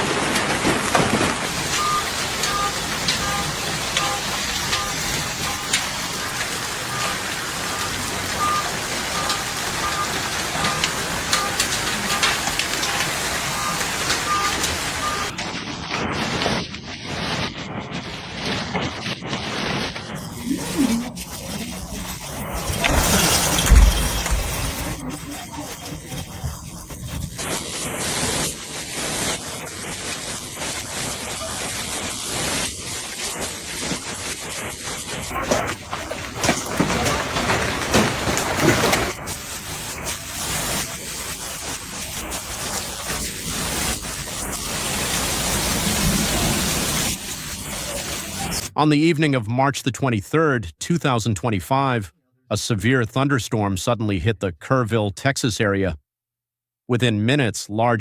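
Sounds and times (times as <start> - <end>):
hailstones cracking on hard surfaces: 0.0 - 48.7
hiss of falling ice and rain: 0.0 - 48.7
short beeps: 1.7 - 5.8, 6.9 - 15.4.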